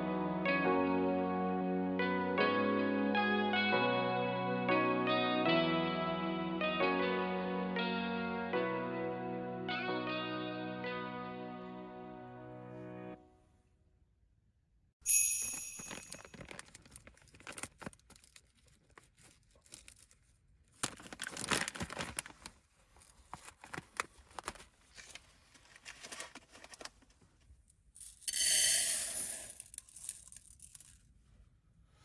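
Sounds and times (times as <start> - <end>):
rustling and tearing: 16.3 - 27.2.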